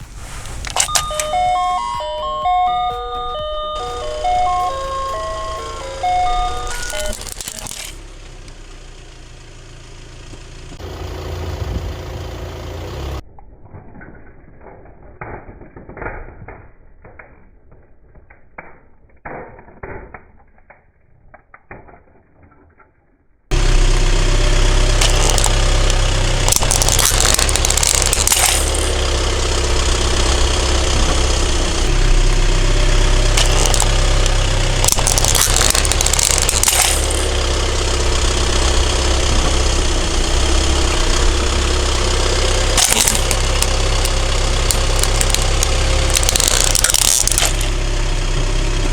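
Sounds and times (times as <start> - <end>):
muffled clicks and cracks: 0.0 - 8.6, 13.3 - 48.9
car engine running: 0.0 - 13.2, 23.5 - 48.9
tyre crushing objects: 23.5 - 48.9.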